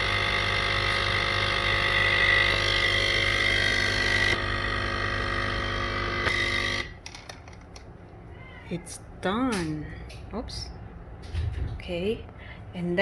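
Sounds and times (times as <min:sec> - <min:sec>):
coffee machine pump running: 0:00.0 - 0:07.7.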